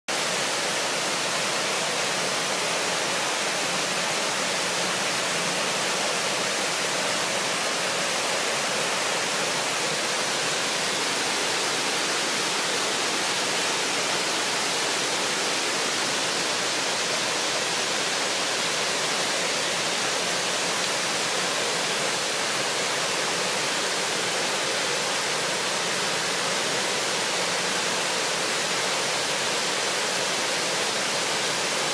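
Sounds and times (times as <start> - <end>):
water rushing: 0.1 - 31.9.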